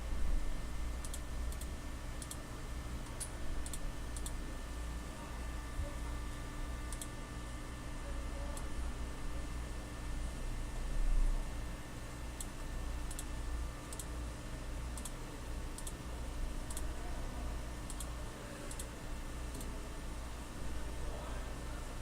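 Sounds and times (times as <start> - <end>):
background hiss and hum: 0.0 - 22.0
computer mouse clicks: 1.0 - 2.4, 3.1 - 4.4, 6.9 - 7.1, 13.1 - 13.3, 13.9 - 14.1, 15.0 - 15.2, 15.8 - 16.0, 16.7 - 16.9, 17.9 - 18.1, 18.7 - 18.9, 19.5 - 19.7.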